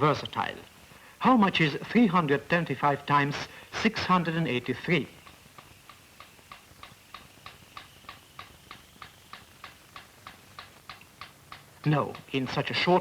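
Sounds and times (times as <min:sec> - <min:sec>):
clock ticking: 0:04.4 - 0:13.0.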